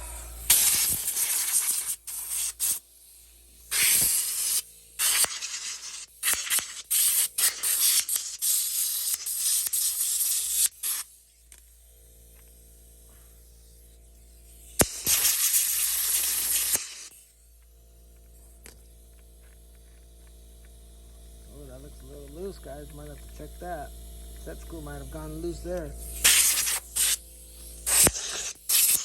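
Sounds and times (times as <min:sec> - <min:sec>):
air blow gun hissing: 0:00.0 - 0:11.4, 0:13.3 - 0:17.2, 0:21.4 - 0:29.0.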